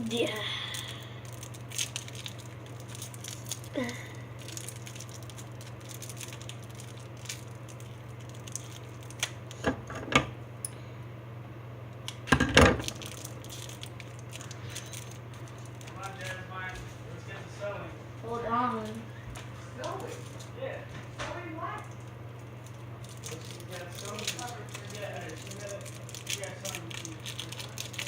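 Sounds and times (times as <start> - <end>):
steady low hum: 0.0 - 28.0
small hard objects clicking: 0.7 - 9.5, 21.9 - 28.0.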